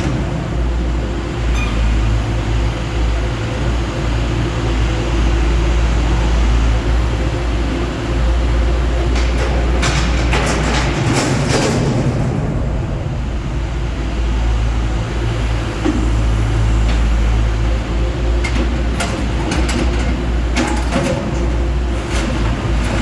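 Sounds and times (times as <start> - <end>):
diesel engine running: 0.0 - 23.0
clanking and knocking: 9.1 - 12.8.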